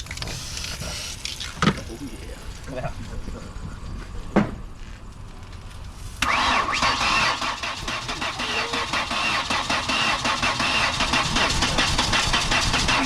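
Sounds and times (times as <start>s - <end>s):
car engine cranking: 6.2s - 13.0s.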